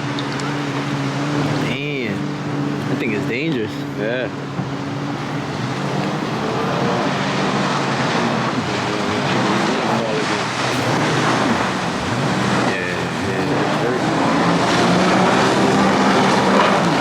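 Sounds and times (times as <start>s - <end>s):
jet ski engine running: 0.0s - 17.0s.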